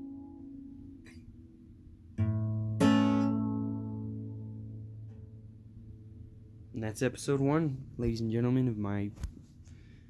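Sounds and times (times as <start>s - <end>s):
acoustic guitar chords strummed: 0.0s - 6.8s.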